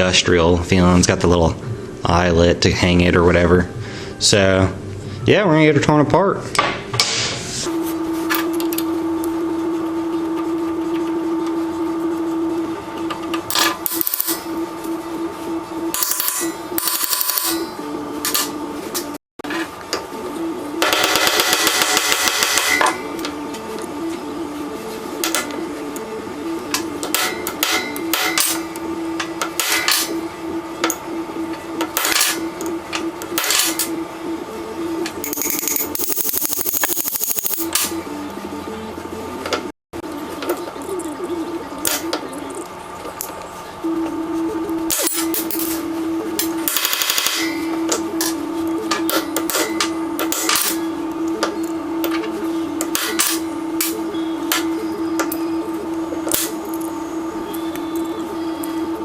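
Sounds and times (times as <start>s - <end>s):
steady low hum: 7.4s - 59.0s
small electric motor humming: 35.2s - 37.7s.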